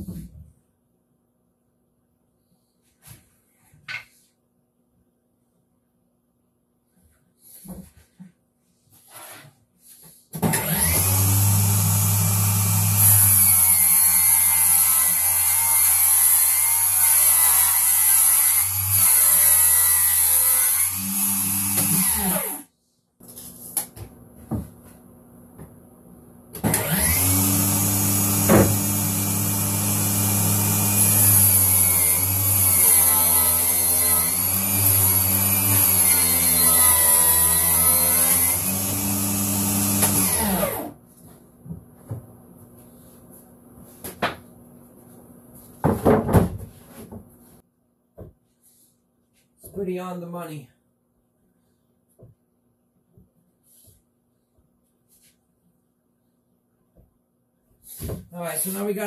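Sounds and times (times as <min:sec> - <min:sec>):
circular saw cutting plywood: 0:10.5 - 0:22.7, 0:26.6 - 0:41.0.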